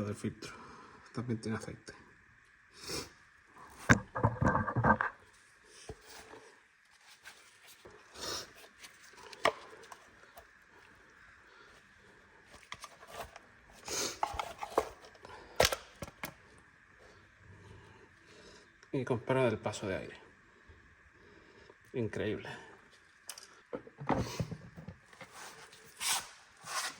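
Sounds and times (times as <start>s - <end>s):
plastic cover clicks and knocks: 3.9s - 5.2s.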